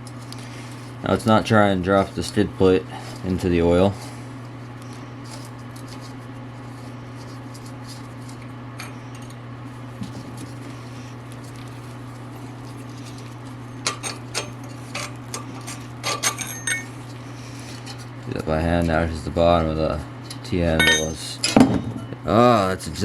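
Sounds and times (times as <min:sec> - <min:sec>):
steady low hum: 0:00.0 - 0:23.0
metal tools tapping and clinking: 0:16.1 - 0:16.9, 0:20.8 - 0:21.6.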